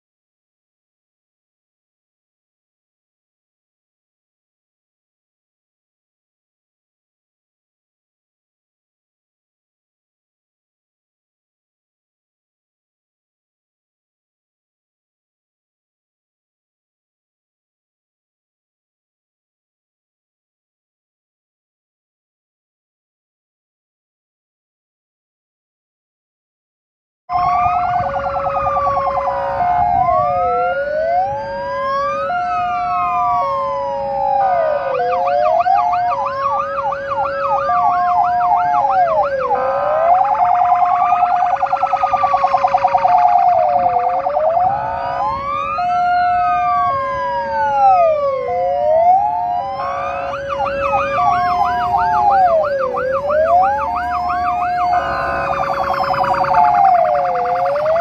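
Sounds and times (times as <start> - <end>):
rapid siren yelp: 27.3 - 58.0
rising and falling siren wail: 27.3 - 58.0
two-note hi-lo siren: 27.3 - 58.0.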